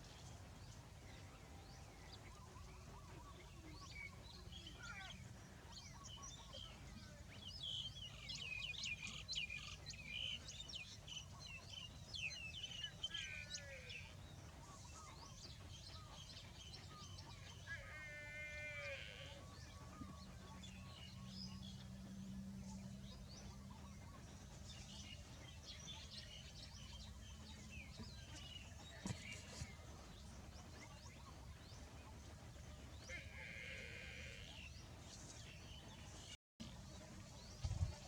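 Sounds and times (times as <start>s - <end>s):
buffalo calf calling: 13.1s - 13.9s, 17.7s - 19.6s, 33.1s - 34.6s.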